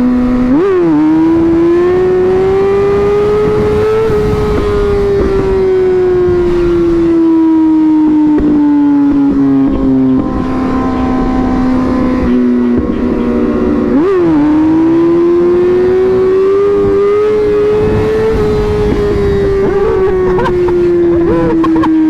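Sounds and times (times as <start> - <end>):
motorcycle engine accelerating: 0.0 - 22.0
wind rushing: 13.4 - 21.9.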